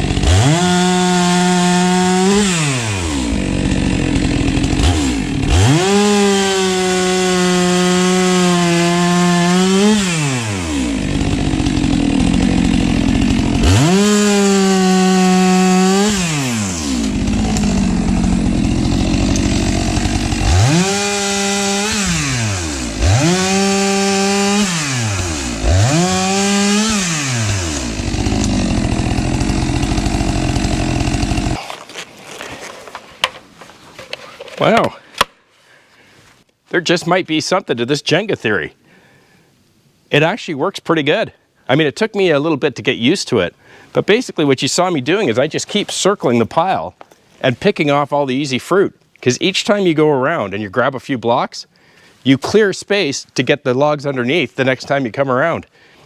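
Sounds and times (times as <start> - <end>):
chainsaw revving and cutting: 0.0 - 32.4.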